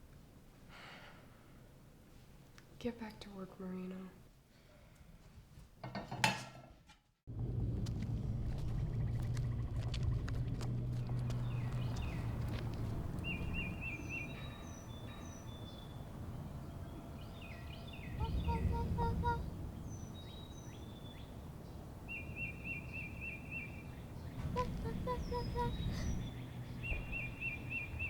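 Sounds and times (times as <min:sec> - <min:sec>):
low background rumble: 0:07.3 - 0:28.0
birds chirping and trilling: 0:08.2 - 0:28.0.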